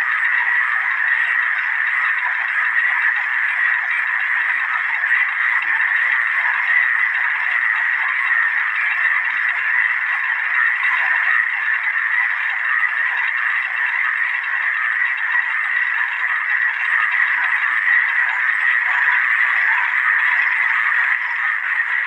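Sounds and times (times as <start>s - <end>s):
chorus of frogs calling: 0.0s - 22.0s.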